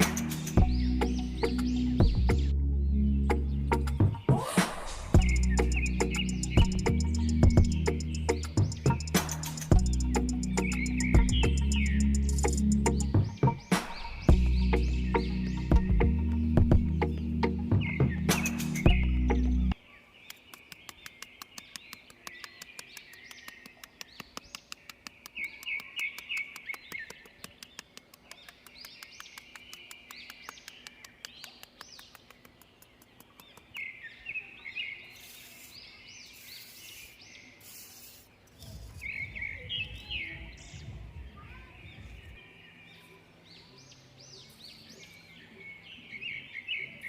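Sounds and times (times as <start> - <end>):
small birds chirping: 0.0 - 47.0.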